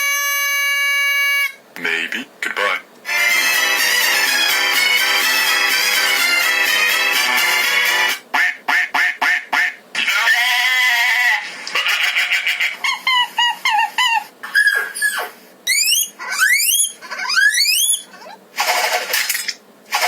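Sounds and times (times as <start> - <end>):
quack-like honks: 8.3 - 9.8
falling chirps: 14.4 - 18.1.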